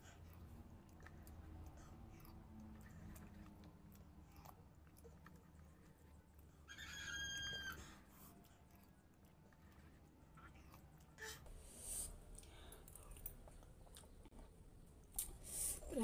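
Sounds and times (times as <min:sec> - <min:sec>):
chewing and slurping noodles: 0:00.0 - 0:11.4.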